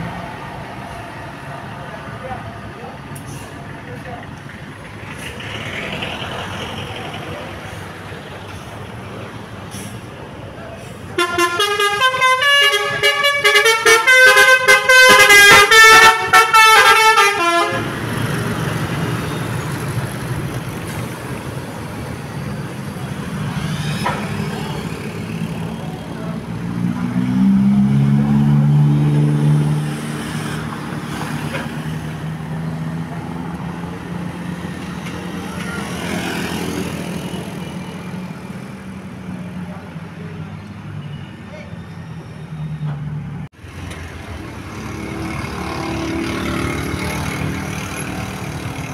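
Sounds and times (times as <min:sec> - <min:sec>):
heavy vehicle engine and road noise: 0:00.0 - 0:48.9
musical bus horn tune: 0:11.2 - 0:18.1.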